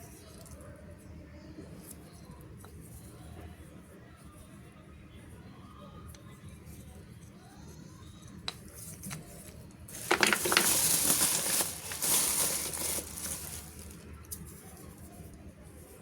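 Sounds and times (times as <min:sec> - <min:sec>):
packaging rustling and crinkling: 0:09.9 - 0:14.1.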